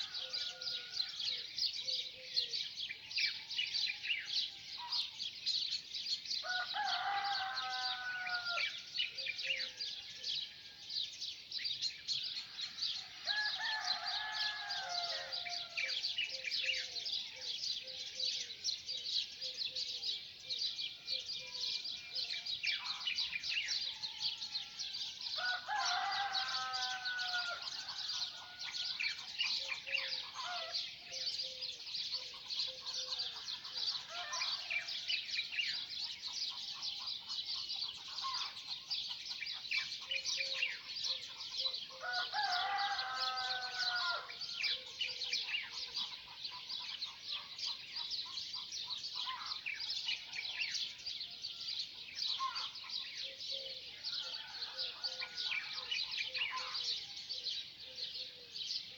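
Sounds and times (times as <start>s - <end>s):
small birds chirping: 0.0s - 58.9s
rooster crowing: 6.4s - 8.8s, 13.0s - 16.0s, 24.0s - 29.0s, 42.0s - 44.4s, 54.2s - 55.8s.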